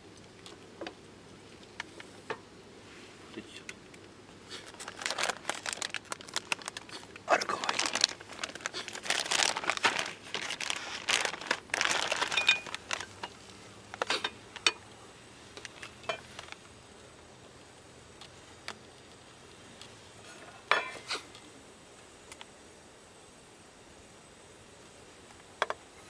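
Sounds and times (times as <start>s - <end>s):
packaging crinkling and rustling: 4.5s - 14.8s, 15.5s - 16.7s.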